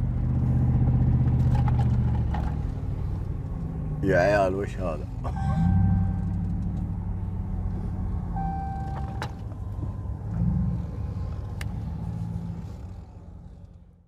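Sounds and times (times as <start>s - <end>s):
off-road vehicle engine rumbling: 0.0s - 14.0s
short high beeps: 5.3s - 6.3s, 8.4s - 9.4s.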